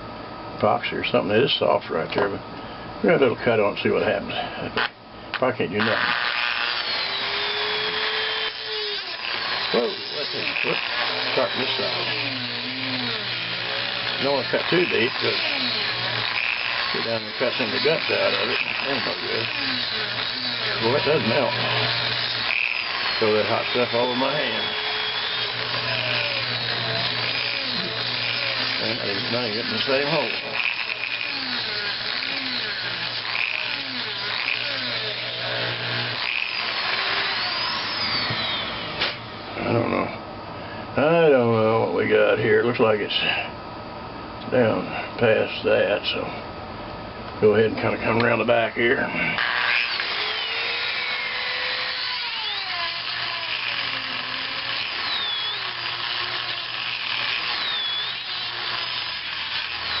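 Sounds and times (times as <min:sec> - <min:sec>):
steady low hum: 0:00.0 - 1:00.0
power tool grinding epoxy: 0:05.7 - 0:40.0, 0:48.2 - 1:00.0.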